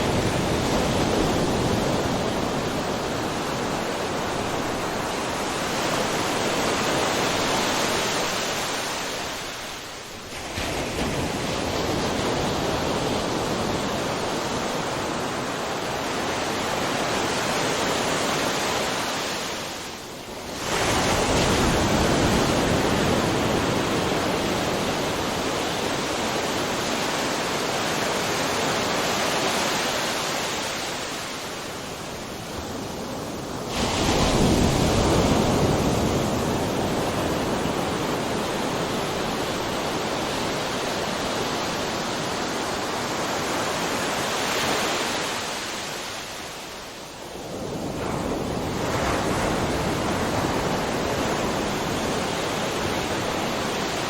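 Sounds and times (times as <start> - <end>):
ocean waves breaking: 0.0 - 54.0
wave crashing: 16.4 - 54.0.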